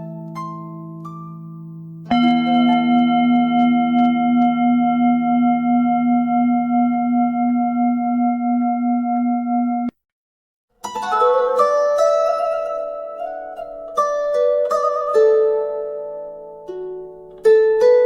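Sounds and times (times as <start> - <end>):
singing bowl ringing: 2.1 - 9.9.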